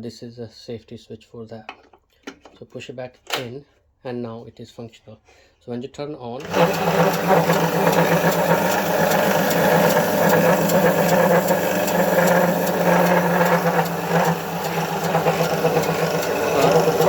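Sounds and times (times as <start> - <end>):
bandsaw motor running: 6.4 - 17.0.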